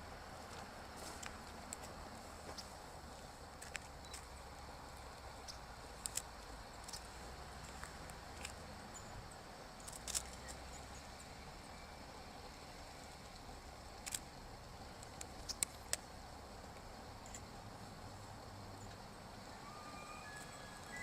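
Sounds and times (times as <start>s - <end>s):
faint outdoor hiss: 0.0s - 21.0s
sharp clicks: 5.5s - 7.1s, 15.0s - 16.1s.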